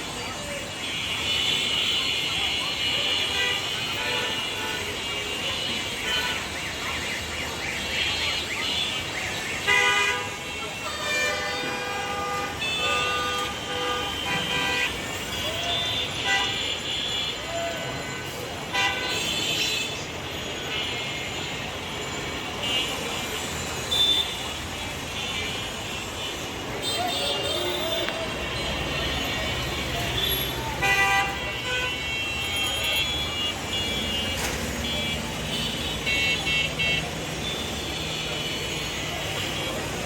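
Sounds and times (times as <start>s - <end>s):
crowd voices: 0.0s - 40.0s
road noise: 0.0s - 40.0s
vehicle horns honking: 8.5s - 21.6s, 22.5s - 40.0s.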